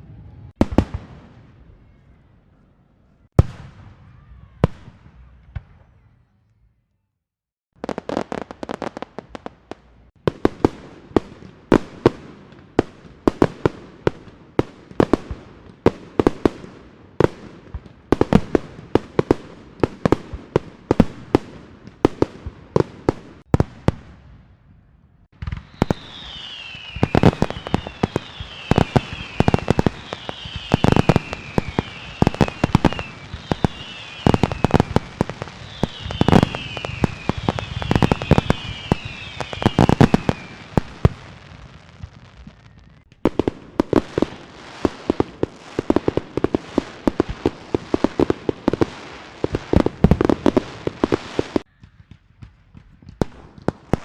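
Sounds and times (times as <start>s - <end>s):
firework bangs: 0.0s - 1.6s, 7.8s - 24.6s, 25.3s - 54.0s
falling firework whistles: 25.4s - 43.2s
firecracker cracks and pops: 25.4s - 54.0s.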